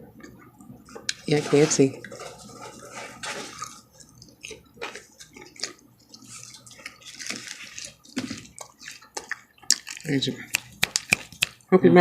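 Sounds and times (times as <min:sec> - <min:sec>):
wet chewing and lip smacking: 0:02.0 - 0:11.7.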